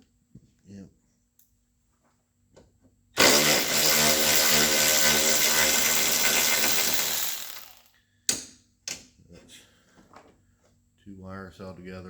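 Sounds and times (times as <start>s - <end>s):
electric power tool motor running: 3.2s - 7.9s.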